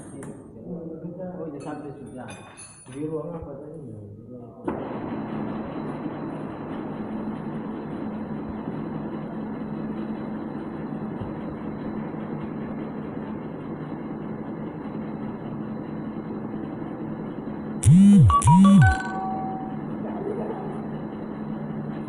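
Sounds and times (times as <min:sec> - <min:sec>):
loud electronic jingle: 0:17.8 - 0:20.2.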